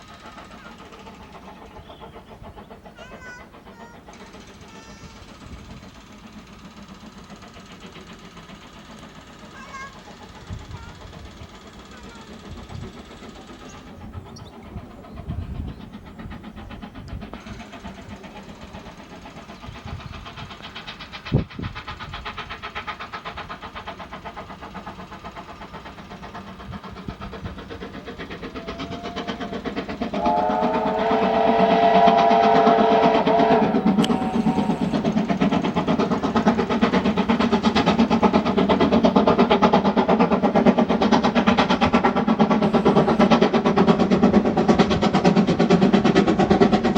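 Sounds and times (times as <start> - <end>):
steam locomotive exhaust beating: 0.0 - 46.9
multi-note train whistle: 28.5 - 35.2.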